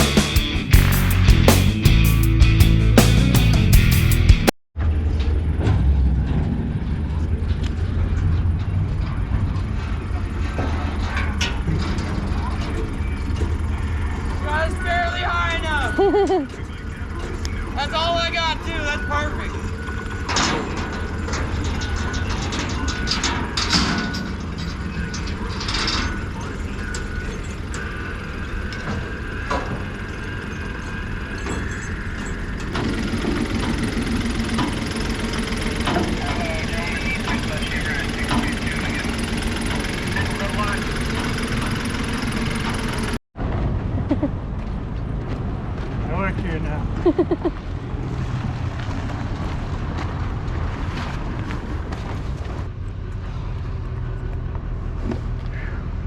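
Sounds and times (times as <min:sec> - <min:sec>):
vehicle engine running: 0:00.0 - 0:43.2.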